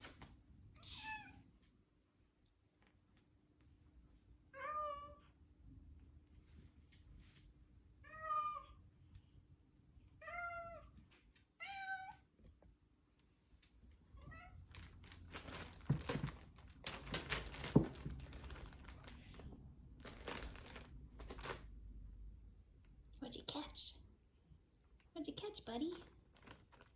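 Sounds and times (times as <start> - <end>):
cat meowing: 0.8 - 1.5, 4.5 - 5.3, 8.0 - 8.8, 10.2 - 11.0, 11.6 - 12.3, 14.2 - 14.7
rustling and scuffling: 14.6 - 21.7.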